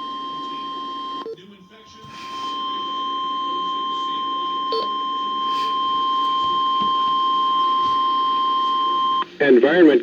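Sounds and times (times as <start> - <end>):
weather radio alert tone: 1.9 - 9.2.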